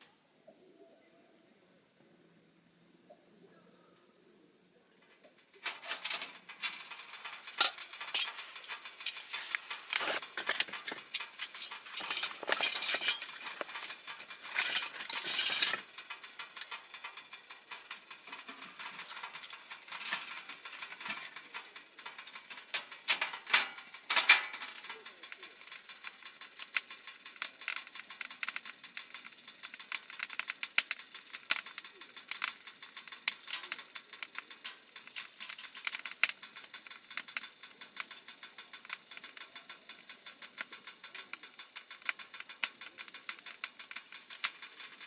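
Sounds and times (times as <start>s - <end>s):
clatter of utensils being moved: 5.6s - 15.9s, 16.6s - 24.9s.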